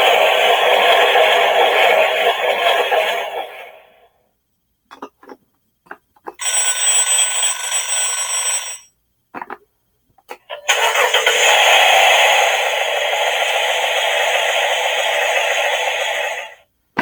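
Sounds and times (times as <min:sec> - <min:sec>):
bell ringing loudly: 0:06.4 - 0:08.9.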